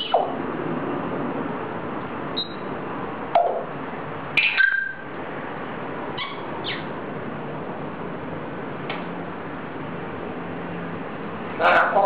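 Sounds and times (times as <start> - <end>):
parrot chirping and whistling: 0.0 - 0.3, 2.4 - 2.7, 4.4 - 5.0, 6.2 - 6.9.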